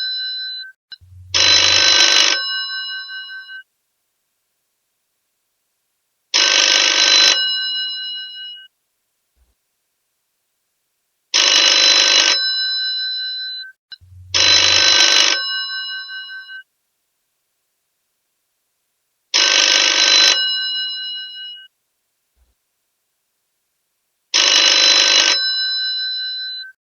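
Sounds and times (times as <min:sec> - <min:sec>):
mechanical telephone bell ringing: 0:01.3 - 0:03.6, 0:11.4 - 0:13.7, 0:14.4 - 0:16.6, 0:19.4 - 0:21.7, 0:24.4 - 0:26.7.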